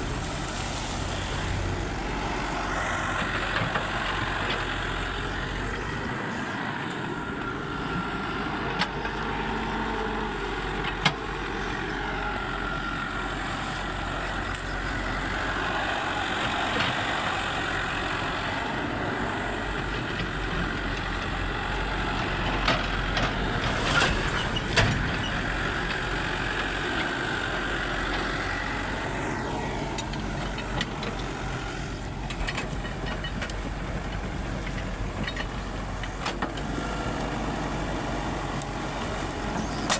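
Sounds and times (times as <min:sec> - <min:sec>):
diesel engine running: 0:00.0 - 0:39.9.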